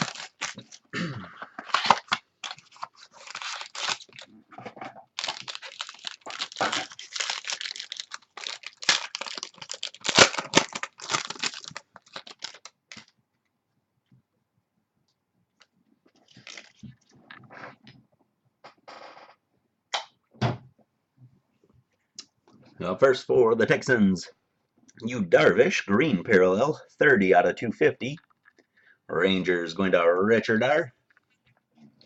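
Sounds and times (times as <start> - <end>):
plastic and paper crinkling: 0.0 - 0.9, 1.5 - 13.2, 16.2 - 17.1.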